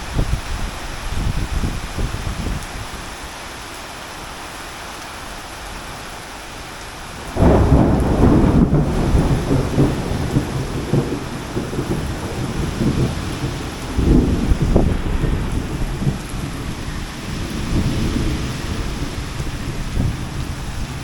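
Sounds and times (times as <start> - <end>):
heavy rain falling: 0.0 - 21.0
loud low rumble: 13.4 - 17.1.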